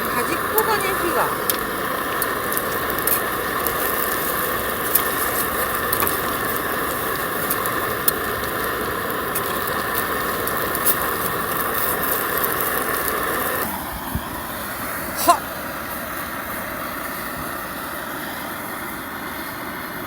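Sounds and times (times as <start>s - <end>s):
food frying with crackling pops: 0.0s - 14.8s.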